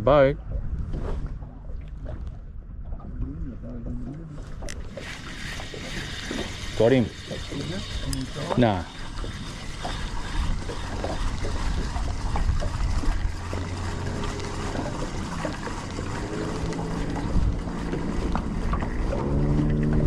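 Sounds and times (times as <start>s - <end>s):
low hum with overtones: 0.0s - 4.9s
wind buffeting microphone: 0.0s - 20.0s.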